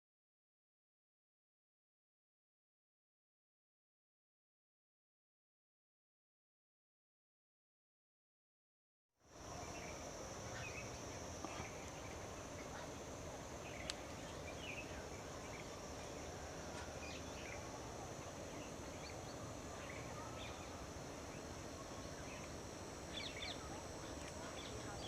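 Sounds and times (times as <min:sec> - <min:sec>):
high insect drone: 0:09.3 - 0:25.0
small birds chirping: 0:09.4 - 0:25.0.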